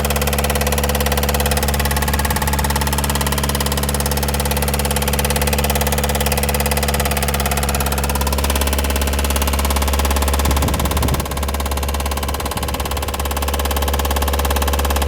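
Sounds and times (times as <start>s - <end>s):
diesel engine idling with knocking: 0.0s - 15.0s.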